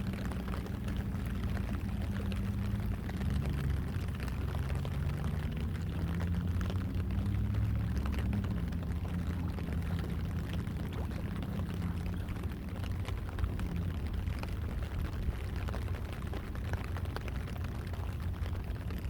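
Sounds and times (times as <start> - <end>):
low engine drone: 0.0 - 19.0
water splashing: 0.0 - 19.0.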